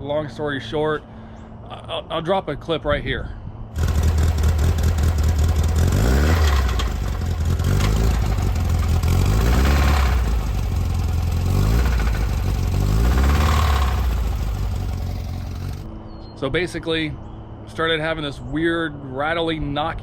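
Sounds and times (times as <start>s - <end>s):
engine revving with rattly knock: 3.8s - 15.9s.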